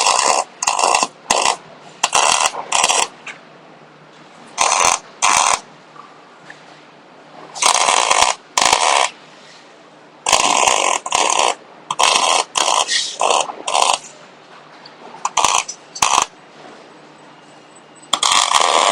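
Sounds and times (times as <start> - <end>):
welder crackling and buzzing: 0.0 - 3.1, 4.6 - 5.6, 7.6 - 9.2, 10.3 - 14.2, 15.2 - 16.4, 18.1 - 18.9.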